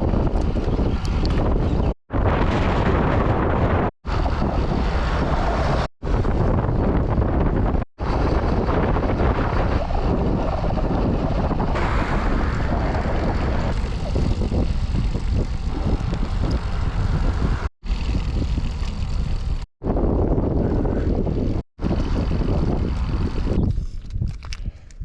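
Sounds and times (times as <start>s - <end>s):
wind buffeting microphone: 0.0s - 25.0s.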